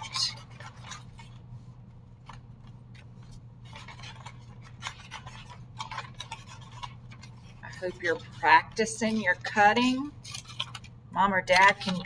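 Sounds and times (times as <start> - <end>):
scissors snipping paper: 0.0 - 1.4, 3.7 - 10.9, 11.5 - 12.0
paper rustling: 0.0 - 12.0.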